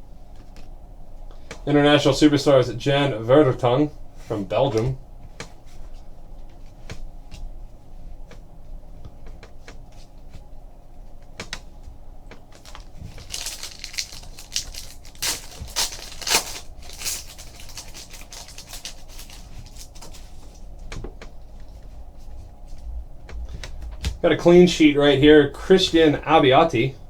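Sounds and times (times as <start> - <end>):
card packs clicking and rustling: 12.3 - 21.1
foil wrapper crinkling and tearing: 12.5 - 20.7.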